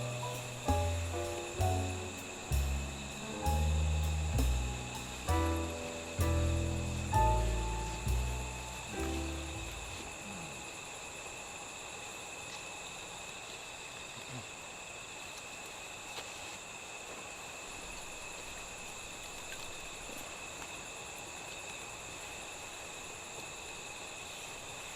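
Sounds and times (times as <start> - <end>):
wood fire crackling: 0.0 - 10.4
insects chorus: 0.0 - 24.9.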